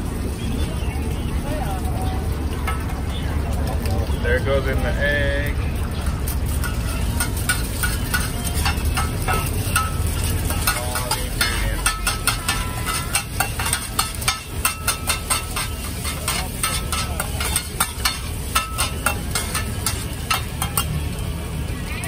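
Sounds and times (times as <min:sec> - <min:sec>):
food sizzling: 0:00.0 - 0:22.0
metal spatula scraping wok: 0:06.4 - 0:21.1.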